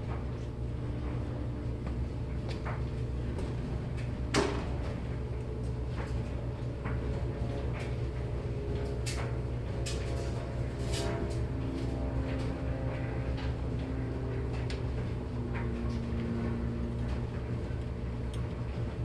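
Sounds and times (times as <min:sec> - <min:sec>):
low mechanical hum: 0:00.0 - 0:19.0.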